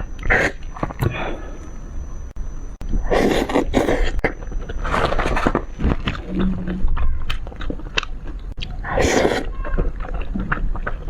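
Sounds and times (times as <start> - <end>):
person chewing with mouth clicks: 2.8 - 11.0.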